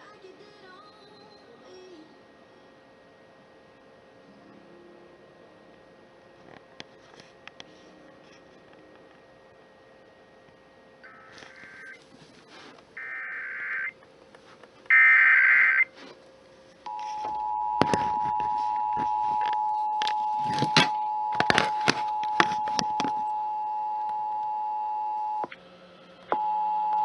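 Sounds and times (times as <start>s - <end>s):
warbling data bursts: 11.0s - 12.0s, 13.0s - 14.0s, 14.9s - 15.9s.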